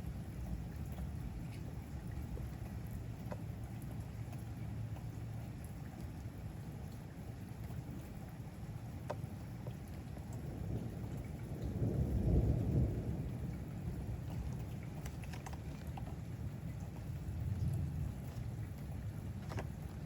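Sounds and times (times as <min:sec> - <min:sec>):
rain falling: 0:00.0 - 0:20.0
raindrops ticking: 0:00.0 - 0:20.0
thunder rumbling: 0:10.3 - 0:15.2.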